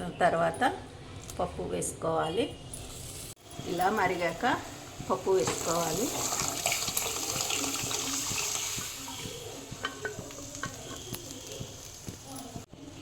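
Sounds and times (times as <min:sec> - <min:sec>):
liquid pouring into a pot: 0:04.8 - 0:10.5
spoon knocking against a pot: 0:09.1 - 0:11.2.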